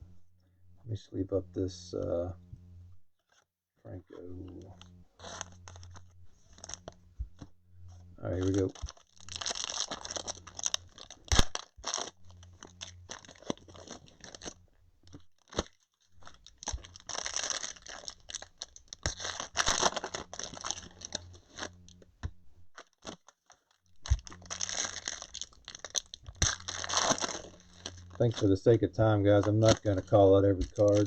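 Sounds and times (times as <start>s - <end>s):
wrappers tearing and crinkling: 4.4s - 7.0s, 8.2s - 22.1s, 22.7s - 31.0s.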